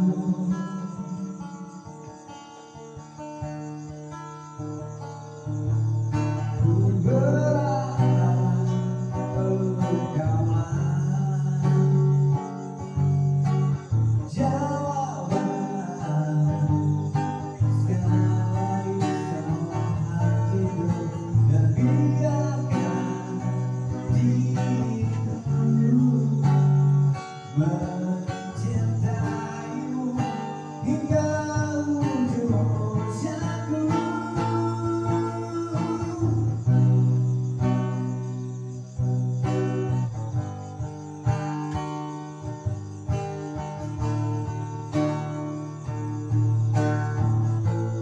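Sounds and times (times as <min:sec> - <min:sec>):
acoustic guitar strumming chords: 0:00.0 - 0:48.0
person singing: 0:14.2 - 0:37.2.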